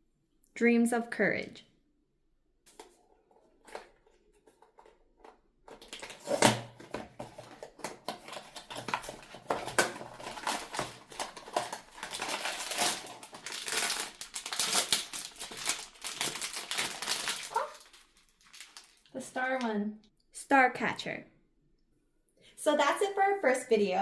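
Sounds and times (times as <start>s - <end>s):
packaging crinkling and rustling: 2.7s - 19.7s.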